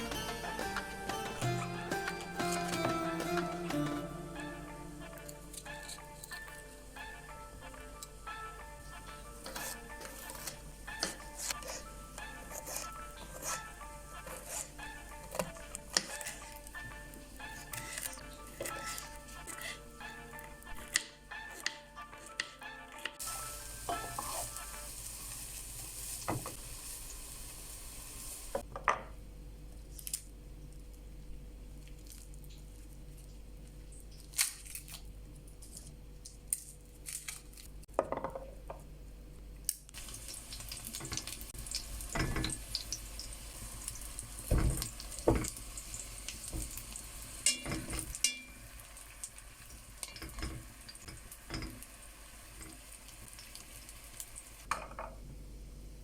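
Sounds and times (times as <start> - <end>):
food sizzling: 0.0 - 21.6, 23.2 - 28.6, 40.0 - 54.7
utensils clinking on pots: 22.4 - 24.6, 42.1 - 42.9, 47.4 - 48.7, 50.0 - 51.8.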